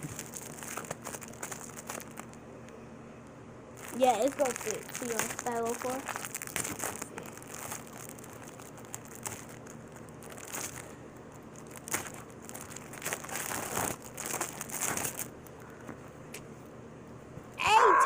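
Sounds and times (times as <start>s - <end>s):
packaging crinkling: 0.0s - 2.4s, 3.8s - 15.8s
small clicks and crackles: 0.0s - 16.5s.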